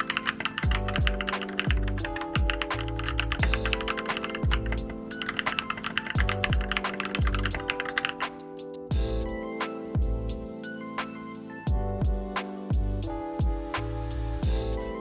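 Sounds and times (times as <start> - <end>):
mechanical keyboard typing: 0.0 - 8.5
background music with kick drum: 0.5 - 15.0.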